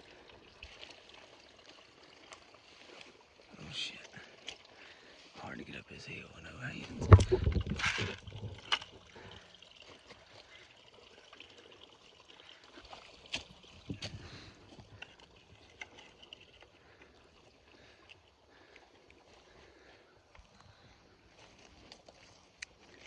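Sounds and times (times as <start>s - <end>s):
footsteps on wet ground: 17.7s - 23.0s.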